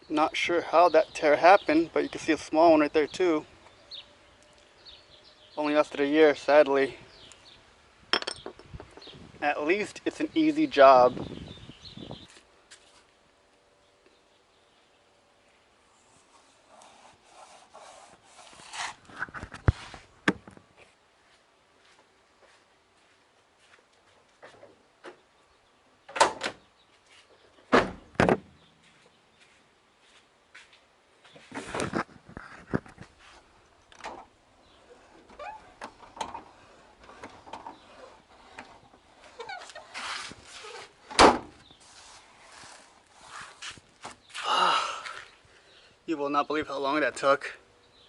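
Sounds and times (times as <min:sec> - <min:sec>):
rubbing and scraping: 0:16.0 - 0:20.1, 0:31.3 - 0:33.5, 0:34.8 - 0:44.2
short squeaks: 0:34.8 - 0:41.0.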